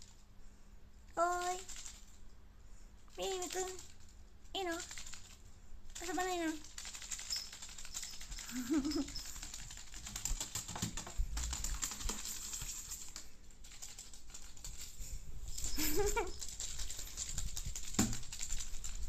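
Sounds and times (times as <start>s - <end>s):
crinkly toy rustling: 11.2s - 19.0s.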